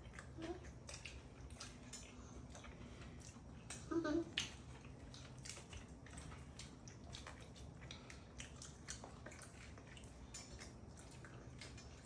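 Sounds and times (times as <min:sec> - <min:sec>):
faint chewing: 0:00.0 - 0:12.0.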